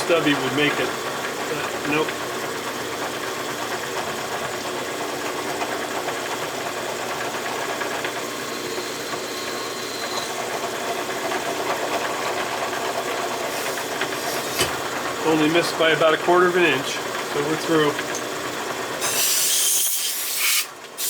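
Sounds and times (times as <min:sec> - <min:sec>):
milling machine running: 0:00.0 - 0:21.0.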